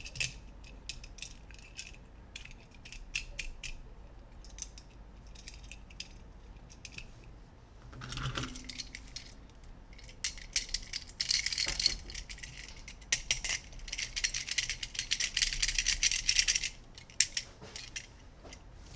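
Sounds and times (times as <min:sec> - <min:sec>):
plastic toy pieces clattering: 0:08.4 - 0:09.4, 0:10.0 - 0:18.1.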